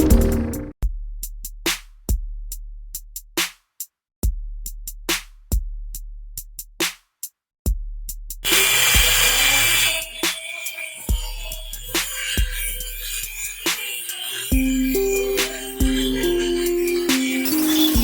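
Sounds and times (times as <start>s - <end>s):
deep booming bass notes: 0.0s - 0.7s
drum machine beat: 0.0s - 18.0s.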